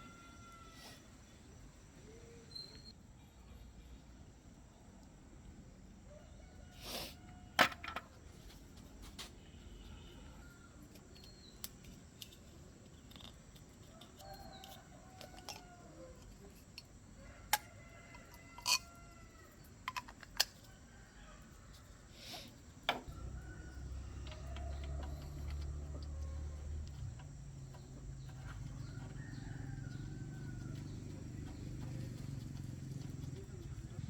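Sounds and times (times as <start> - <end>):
chickens clucking and crowing: 23.0 - 34.0.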